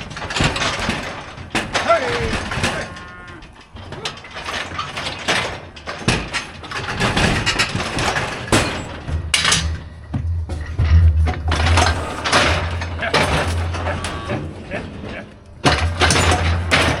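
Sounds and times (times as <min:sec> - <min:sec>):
steel equipment clanking: 0:00.0 - 0:17.0
low steady hum: 0:08.6 - 0:16.9.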